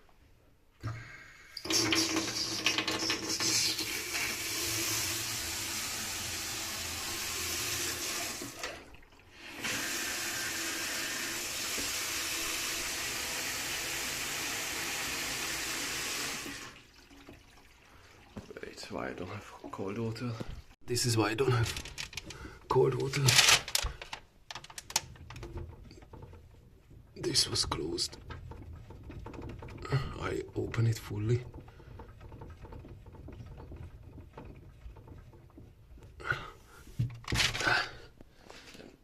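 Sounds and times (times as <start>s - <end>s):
water running hard from tap: 1.6s - 18.7s.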